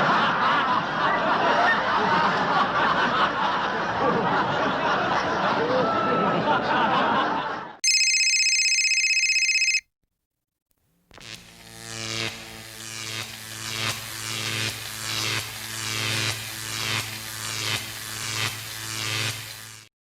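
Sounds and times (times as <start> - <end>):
telephone bell ringing: 7.8 - 9.8.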